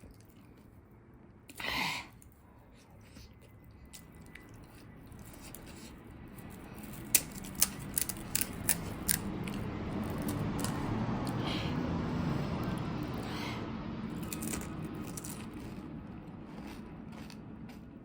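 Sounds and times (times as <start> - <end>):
crisp shells cracking: 6.4 - 10.8, 14.2 - 15.8.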